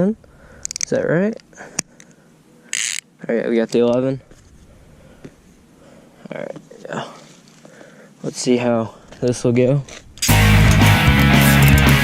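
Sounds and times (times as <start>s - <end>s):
rock music with guitar: 10.2s - 12.0s.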